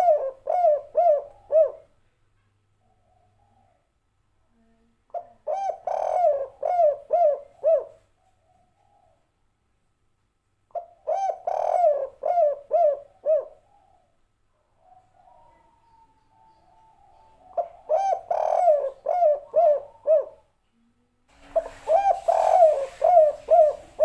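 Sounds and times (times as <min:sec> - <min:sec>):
dove cooing: 0:00.0 - 0:01.9, 0:05.1 - 0:09.2, 0:10.7 - 0:14.1, 0:14.8 - 0:20.5, 0:21.3 - 0:24.0.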